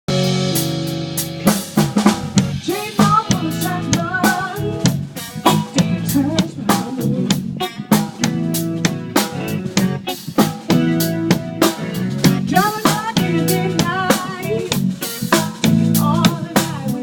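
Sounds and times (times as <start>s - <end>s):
snare and bass drum hits: 0.1s - 3.2s
live band playing: 0.1s - 17.0s.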